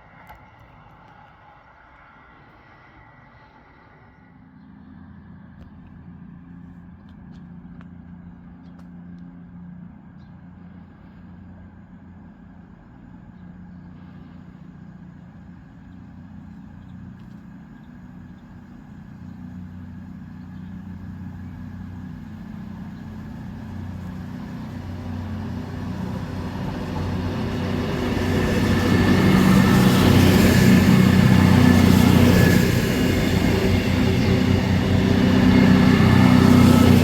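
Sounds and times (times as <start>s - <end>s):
train approaching hum: 0.0s - 6.8s, 7.9s - 37.0s
rail noise: 13.7s - 37.0s.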